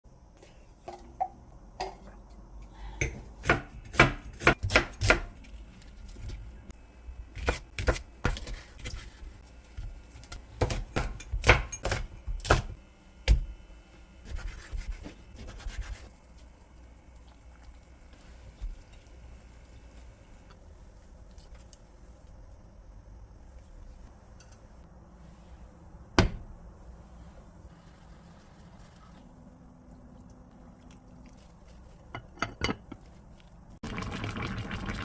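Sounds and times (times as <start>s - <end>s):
knife chopping on cutting board: 3.4s - 5.3s.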